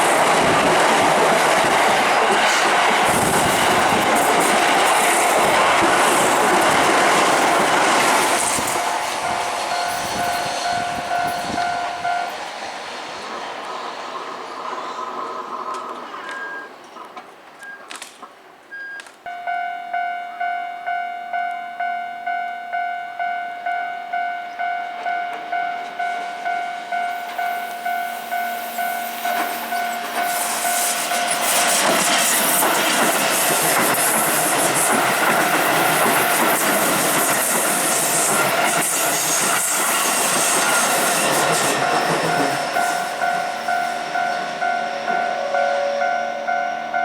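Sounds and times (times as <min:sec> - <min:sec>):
train wheels rushing on rails: 0:00.0 - 0:18.3, 0:24.6 - 0:47.0
level crossing electronic bell ringing: 0:19.3 - 0:31.5, 0:41.8 - 0:47.0.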